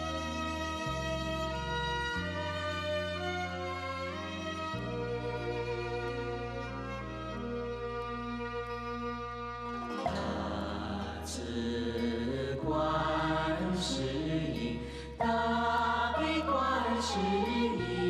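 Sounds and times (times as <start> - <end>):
sustained bass chords: 8.6 - 18.0
chanted singing: 10.0 - 18.0.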